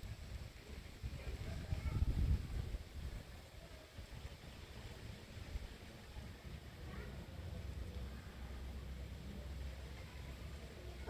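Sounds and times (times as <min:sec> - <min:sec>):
wind buffeting a microphone: 0:00.0 - 0:06.3.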